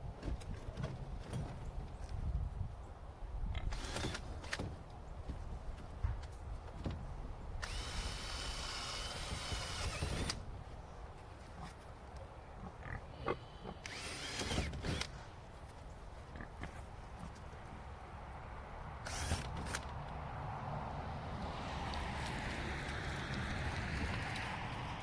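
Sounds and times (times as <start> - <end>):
power drill whine: 7.6 - 10.4, 13.8 - 15.1, 19.1 - 19.8.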